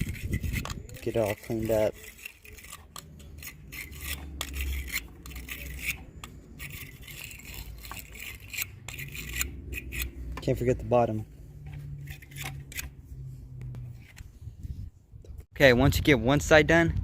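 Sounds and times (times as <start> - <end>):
wire brush scraping metal: 0.0 - 11.0, 11.6 - 13.2.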